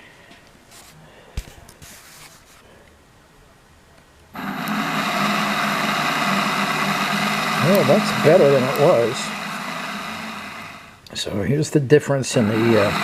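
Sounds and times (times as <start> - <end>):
electric motor whirring and grinding: 4.4 - 11.0, 12.4 - 13.0.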